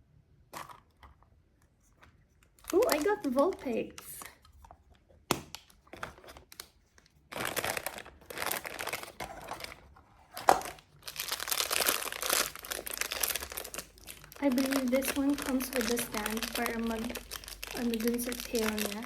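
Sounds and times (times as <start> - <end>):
plastic wrapper crinkling: 1.8 - 19.0
sharp plastic snap: 5.3 - 5.8.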